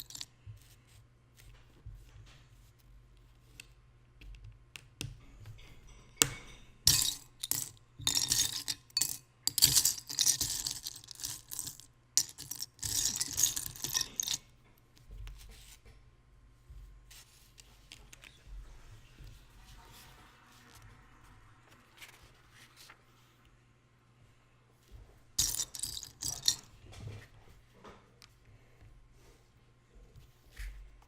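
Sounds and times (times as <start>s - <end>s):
plastic toy bricks clattering: 6.9s - 14.4s, 25.4s - 26.7s.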